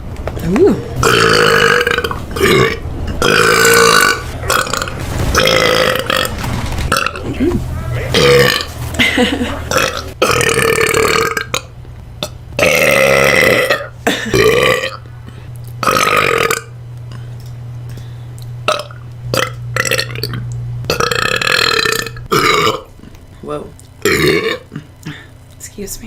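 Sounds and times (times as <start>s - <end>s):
woman burping: 0.4s - 6.3s, 8.2s - 15.0s, 18.7s - 22.9s, 24.0s - 25.3s.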